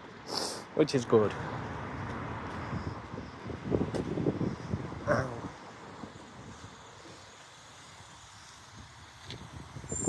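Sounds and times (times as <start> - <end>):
distant road traffic hiss: 0.0 - 10.0.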